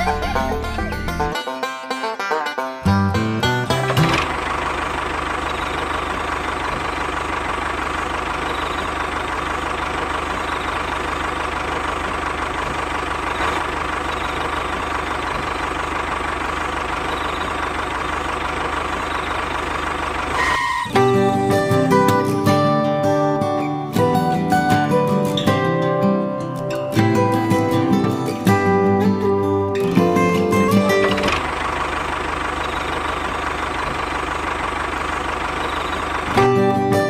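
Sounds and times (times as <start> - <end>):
plucked-string music: 0.0 - 7.0, 20.3 - 31.8, 35.6 - 37.0.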